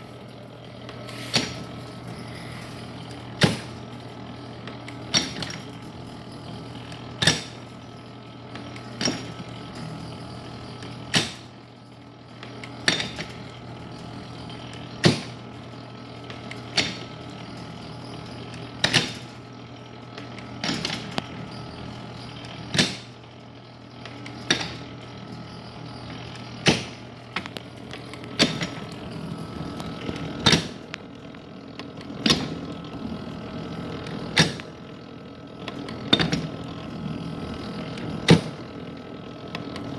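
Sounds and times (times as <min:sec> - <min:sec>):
steady low hum: 0:20.6 - 0:39.9.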